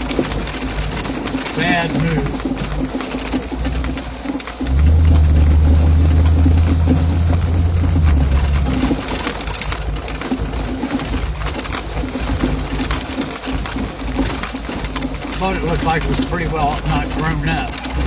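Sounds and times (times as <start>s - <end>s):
vehicle engine working hard: 1.6s - 9.8s, 15.6s - 18.0s
weed stalks scratching vehicle: 3.4s - 9.0s.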